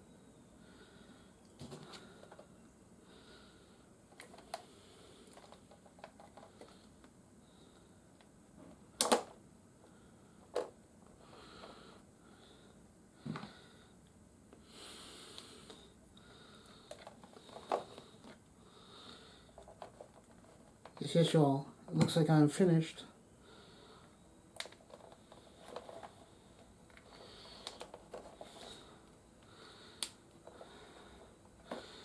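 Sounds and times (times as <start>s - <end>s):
plastic toy parts clicking: 9.0s - 9.3s.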